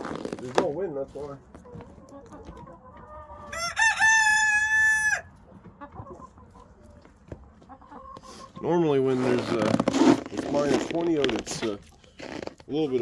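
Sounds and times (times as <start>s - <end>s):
rooster crowing: 3.5s - 5.3s.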